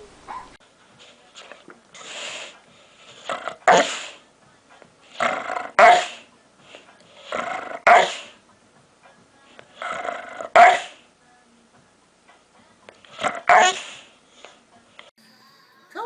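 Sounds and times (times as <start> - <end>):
dog barking: 0.3 - 0.6, 3.6 - 4.0, 5.8 - 6.2, 7.8 - 8.3, 10.4 - 11.0, 13.2 - 14.0.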